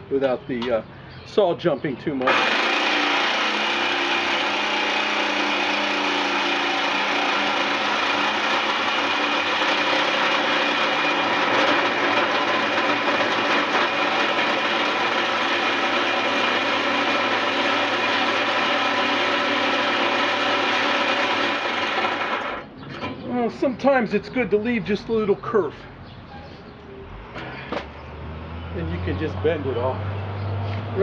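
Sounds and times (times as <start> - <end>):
power saw cutting through thin steel: 2.2 - 22.7.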